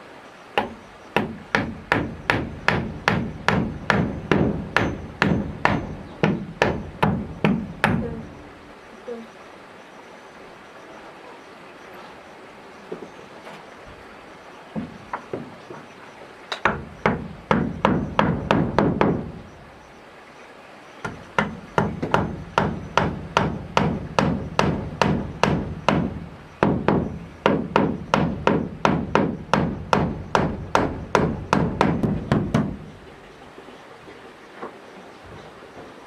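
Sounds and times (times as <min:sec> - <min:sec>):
hammer striking wood: 0:00.6 - 0:08.2, 0:16.5 - 0:19.3, 0:21.0 - 0:32.8.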